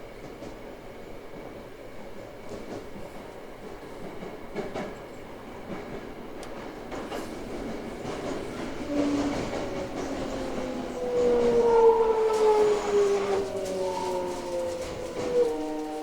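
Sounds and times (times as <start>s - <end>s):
subway car rumbling on rails: 0.0s - 16.0s
wheels clicking over rail joints: 5.7s - 16.0s.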